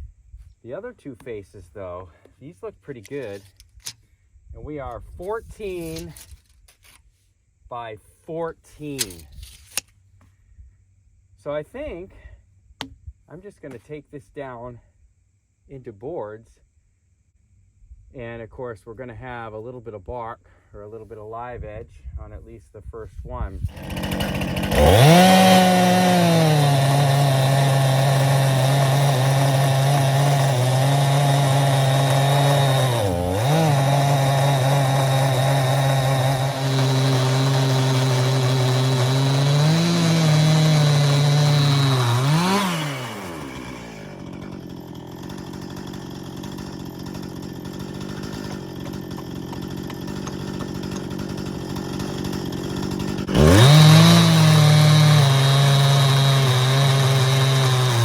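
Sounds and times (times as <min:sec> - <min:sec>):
chainsaw cutting wood: 0:03.0 - 0:04.0, 0:05.7 - 0:07.0, 0:08.8 - 0:09.9, 0:23.6 - 0:58.0.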